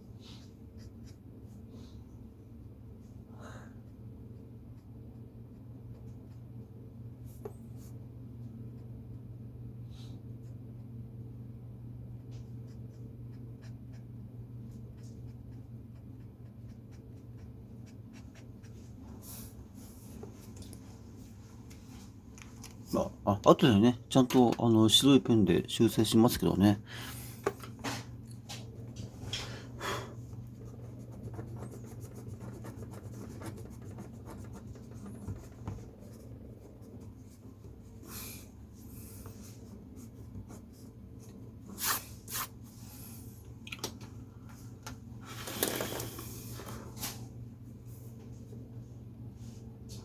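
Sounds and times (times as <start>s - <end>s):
low room hum: 0.0s - 50.0s
pen scratching on paper: 12.5s - 18.8s, 30.5s - 37.4s.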